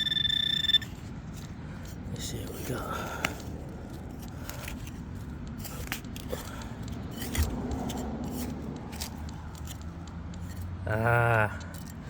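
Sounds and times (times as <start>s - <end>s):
digging scrapes in soil: 1.1s - 9.8s.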